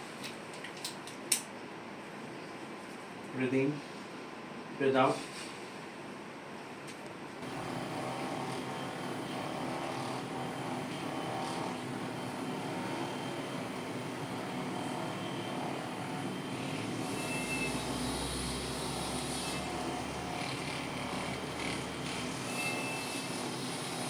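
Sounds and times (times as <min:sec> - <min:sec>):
motor-like drone: 0:07.4 - 0:24.0.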